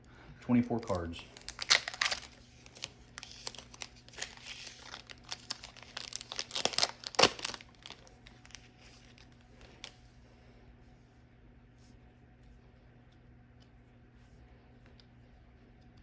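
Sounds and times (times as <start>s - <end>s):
plastic wrapper crinkling and tearing: 0.8s - 10.0s.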